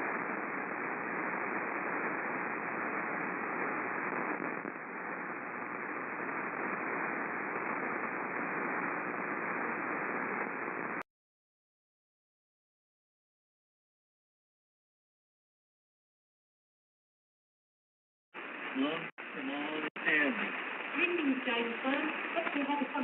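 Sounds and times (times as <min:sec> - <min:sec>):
shortwave radio hiss and static: 0:00.0 - 0:11.1, 0:18.4 - 0:23.0.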